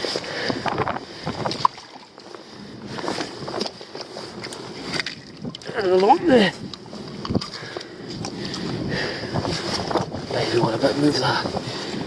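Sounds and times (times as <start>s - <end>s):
wind hiss: 4.3s - 12.0s.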